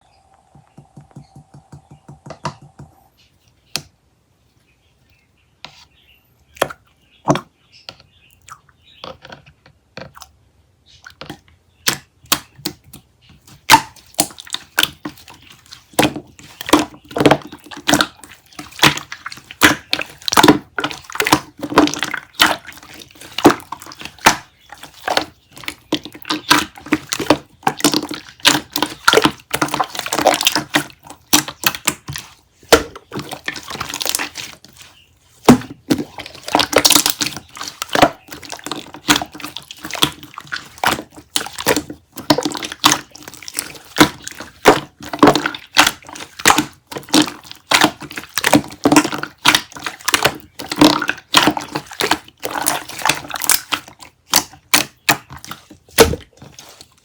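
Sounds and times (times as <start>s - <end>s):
slime squished by hand: 11.8s - 57.0s.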